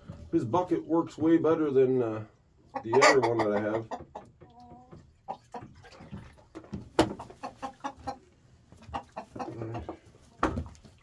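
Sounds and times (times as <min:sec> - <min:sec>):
roosters clucking: 0:00.0 - 0:11.0.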